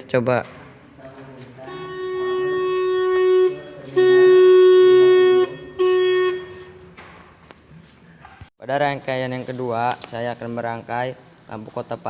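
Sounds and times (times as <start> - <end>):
electric car horn blasts: 1.6 - 7.0.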